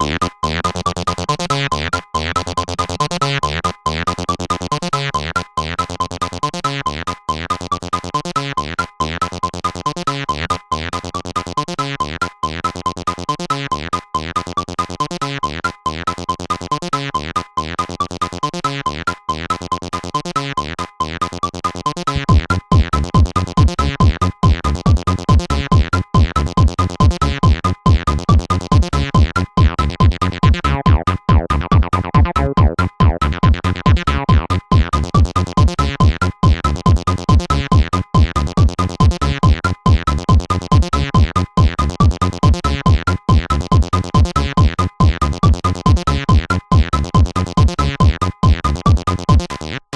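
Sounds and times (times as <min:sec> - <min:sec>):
looping synthesizer pattern: 0:00.0 - 0:49.9
heavy bass kick drum: 0:22.2 - 0:49.6.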